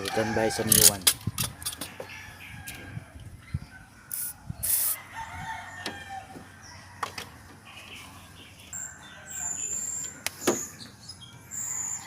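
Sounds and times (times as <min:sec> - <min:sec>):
distant rooster crowing: 0:00.0 - 0:03.2, 0:04.6 - 0:07.7, 0:11.5 - 0:12.0.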